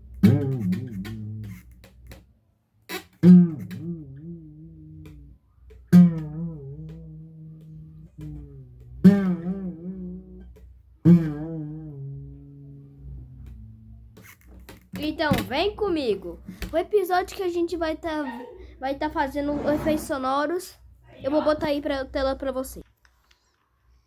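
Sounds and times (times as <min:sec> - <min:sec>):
slack guitar string twanging: 0:00.0 - 0:02.2, 0:02.9 - 0:15.6.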